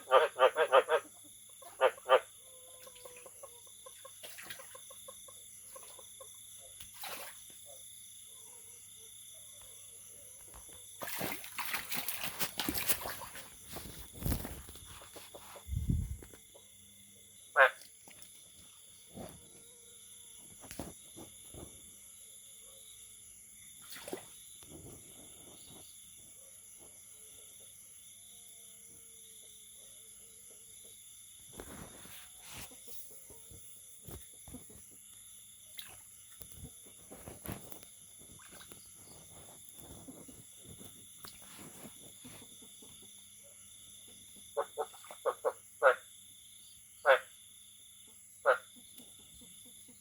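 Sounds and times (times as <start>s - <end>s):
faint frog calls: 0.0s - 50.0s.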